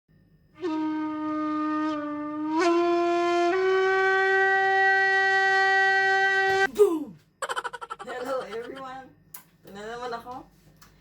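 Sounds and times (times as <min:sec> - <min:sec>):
wind instrument sustained note: 0:00.5 - 0:06.7.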